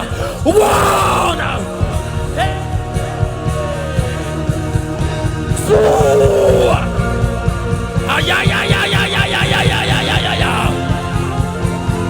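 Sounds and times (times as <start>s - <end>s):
person singing rough cry: 0.0s - 2.7s, 5.6s - 7.0s
worship band music: 0.0s - 12.0s.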